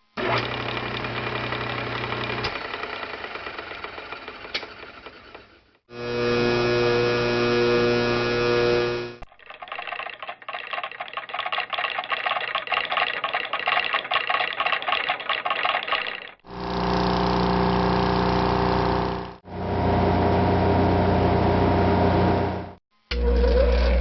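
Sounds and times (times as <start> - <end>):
electrical motor hum: 5.9 - 24.0.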